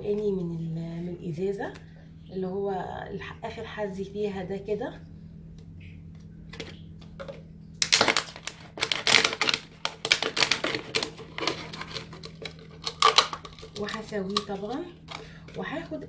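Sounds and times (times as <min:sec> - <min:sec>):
scissors snipping plastic: 0:07.8 - 0:15.3.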